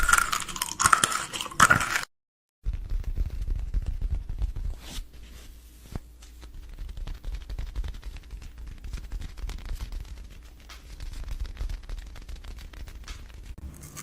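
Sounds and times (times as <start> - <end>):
crunching a crunchy snack: 0.0 - 2.1, 13.6 - 14.0.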